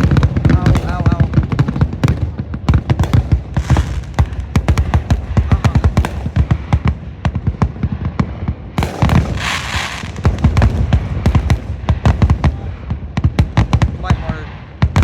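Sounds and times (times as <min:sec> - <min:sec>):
fireworks booming: 0:00.0 - 0:15.0
fireworks hiss: 0:03.0 - 0:06.8, 0:08.8 - 0:12.8.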